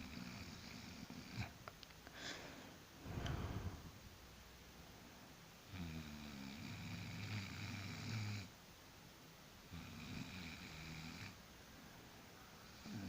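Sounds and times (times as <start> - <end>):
person snoring: 3.0 - 4.0.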